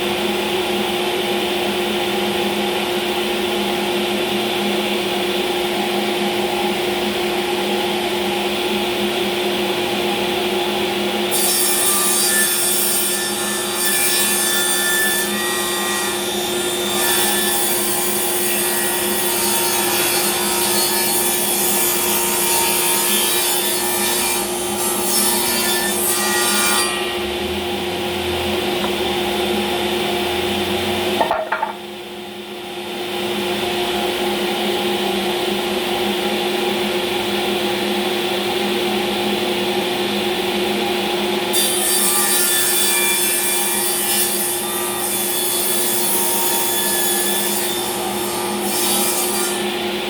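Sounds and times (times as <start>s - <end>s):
power saw cutting wood: 11.3s - 31.8s, 41.5s - 49.8s.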